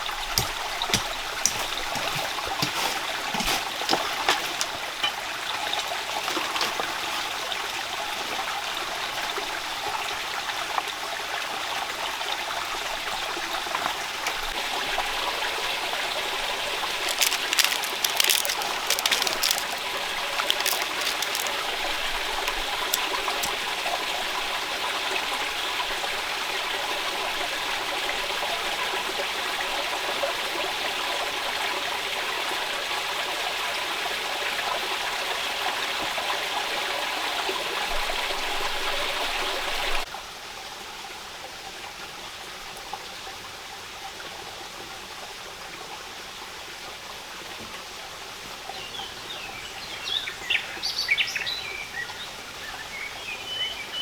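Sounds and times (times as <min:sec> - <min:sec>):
running water rushing: 0:00.0 - 0:11.0, 0:12.4 - 0:27.3.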